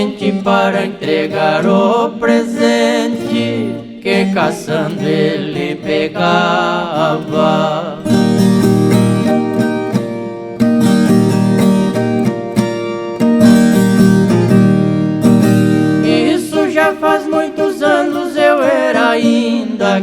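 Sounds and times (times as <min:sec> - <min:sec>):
man singing: 0:00.0 - 0:09.2, 0:15.9 - 0:20.0
plucked guitar chords: 0:00.0 - 0:20.0.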